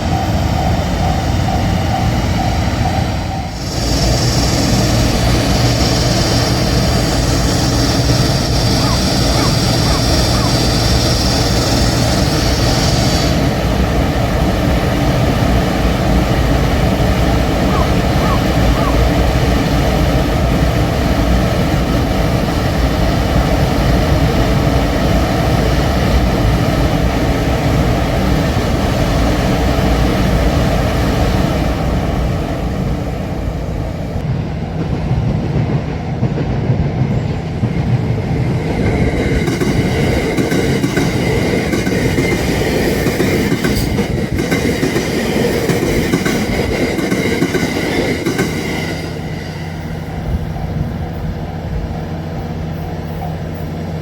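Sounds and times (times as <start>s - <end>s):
high wheel squeal: 0.0s - 13.4s, 17.7s - 19.0s
clickety-clack over rail joints: 0.0s - 30.8s, 34.2s - 53.8s
train wheels rumbling: 0.0s - 54.0s.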